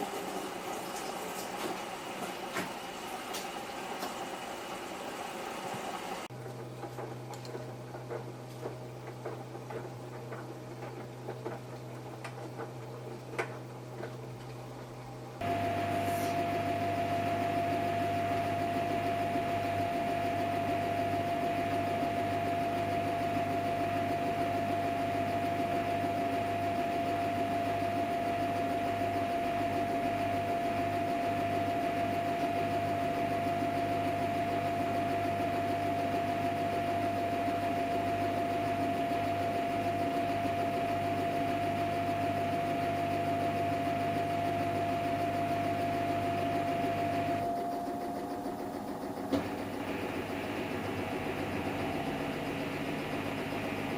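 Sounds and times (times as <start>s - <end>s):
washing machine hum: 0.0s - 53.9s
high whine: 15.4s - 22.9s.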